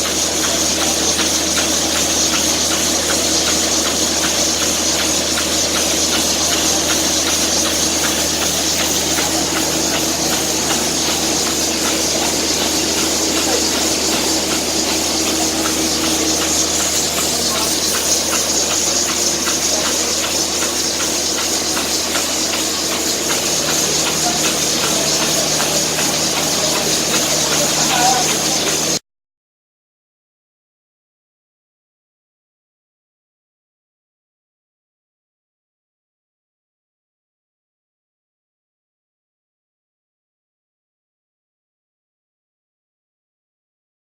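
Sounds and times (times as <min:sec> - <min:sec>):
airy hiss of blower: 0:00.0 - 0:29.0
machine hum: 0:00.0 - 0:29.0.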